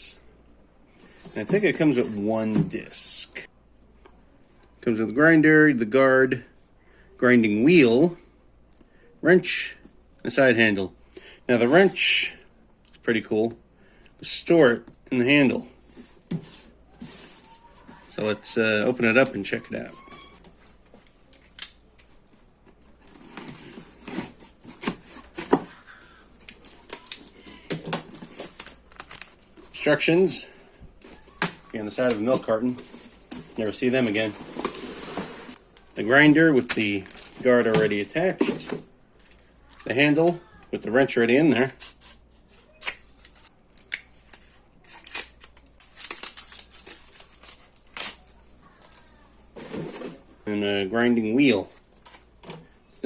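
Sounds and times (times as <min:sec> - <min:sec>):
cardboard packaging rustling: 0:15.8 - 0:39.8, 0:43.2 - 0:50.4.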